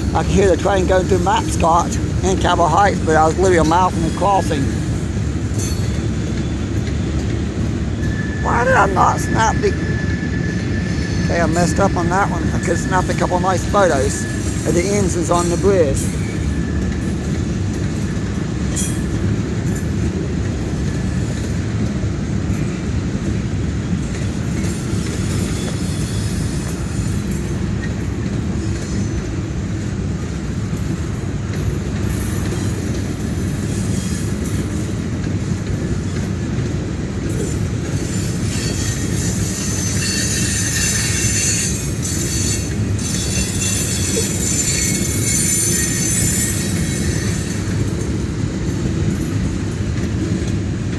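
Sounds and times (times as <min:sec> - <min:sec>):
train cars rumbling on rails: 0:00.0 - 0:50.9
train wheel clatter: 0:00.0 - 0:50.9
metal wheel squeal: 0:08.0 - 0:16.9, 0:38.0 - 0:47.8.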